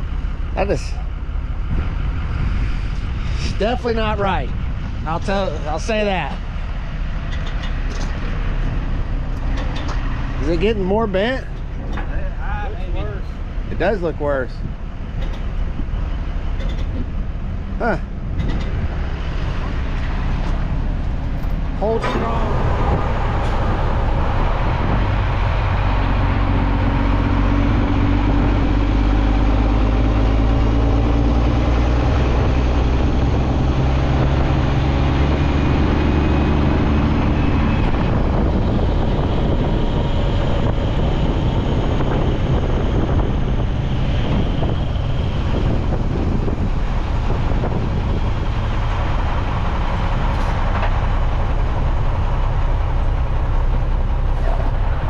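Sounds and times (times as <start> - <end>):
diesel machinery engine droning: 0.0 - 55.0.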